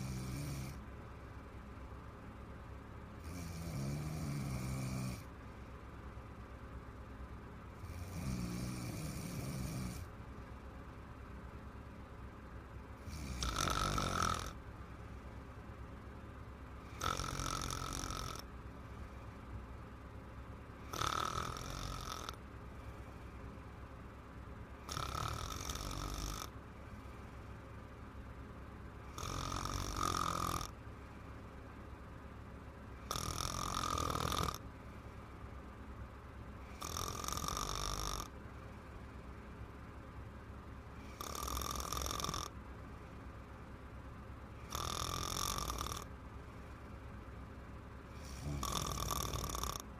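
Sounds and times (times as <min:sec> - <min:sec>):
woman snoring: 0:00.0 - 0:00.8, 0:03.2 - 0:05.3, 0:07.8 - 0:10.1, 0:13.0 - 0:14.6, 0:16.9 - 0:18.5, 0:20.9 - 0:22.4, 0:24.9 - 0:26.5, 0:29.1 - 0:30.7, 0:33.1 - 0:34.6, 0:36.7 - 0:38.3, 0:41.0 - 0:42.5, 0:44.6 - 0:46.1, 0:48.2 - 0:49.8
low steady hum: 0:00.0 - 0:49.9.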